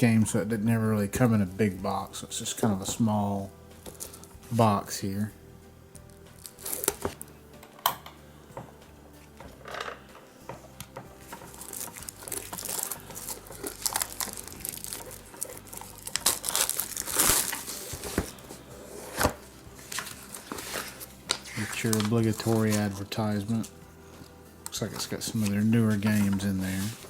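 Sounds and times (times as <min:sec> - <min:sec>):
plastic wrapping tearing and crinkling: 0:03.8 - 0:04.3, 0:06.3 - 0:07.9, 0:10.8 - 0:23.8, 0:24.6 - 0:27.0.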